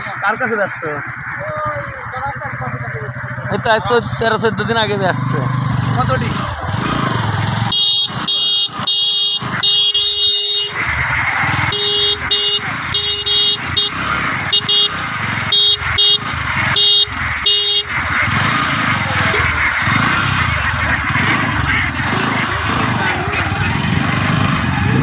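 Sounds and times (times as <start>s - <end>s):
engine running: 0.0s - 25.0s
horn beeping: 7.5s - 22.8s.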